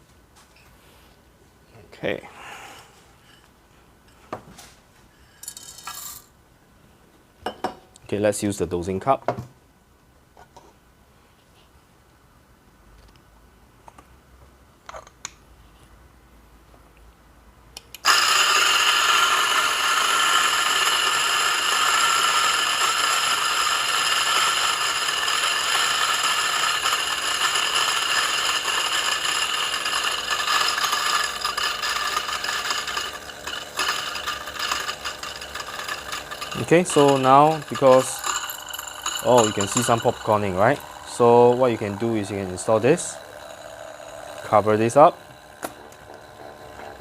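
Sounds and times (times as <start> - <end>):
coffee grinder grinding: 5.4 - 6.3, 18.0 - 47.0.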